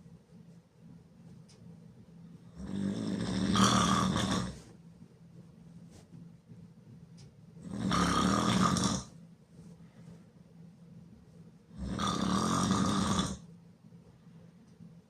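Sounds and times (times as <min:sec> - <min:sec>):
person snoring loudly: 0:02.6 - 0:04.6, 0:07.7 - 0:09.1, 0:11.8 - 0:13.4.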